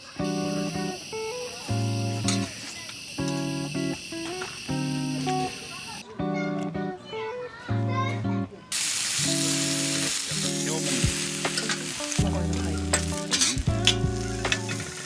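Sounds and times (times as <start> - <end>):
food sizzling in a pan: 0.0 - 6.0, 8.7 - 15.0
sharp crackles: 8.8 - 15.0
background music: 9.2 - 15.0.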